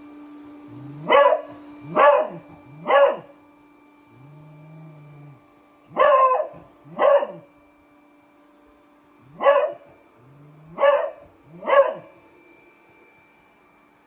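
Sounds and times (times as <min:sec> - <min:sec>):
robot vacuum cleaner humming: 0:00.0 - 0:14.0
dog barking: 0:01.0 - 0:03.3, 0:05.9 - 0:07.5, 0:09.3 - 0:09.9, 0:10.7 - 0:12.1.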